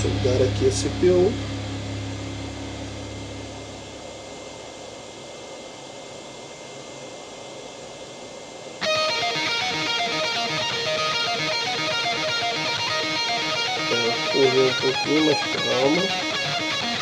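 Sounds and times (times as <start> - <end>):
heavy rock music: 0.0 - 4.1, 8.8 - 17.0
steady airy hiss: 0.0 - 17.0.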